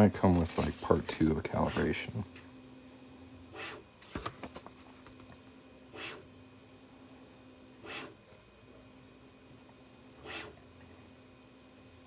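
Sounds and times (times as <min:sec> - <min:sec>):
printer movement swishes: 0:00.0 - 0:02.5
faint printer hum: 0:00.0 - 0:12.0.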